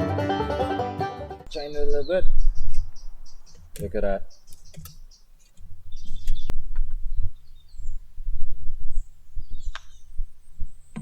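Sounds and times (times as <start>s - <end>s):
faint birds chirping: 1.5s - 11.0s.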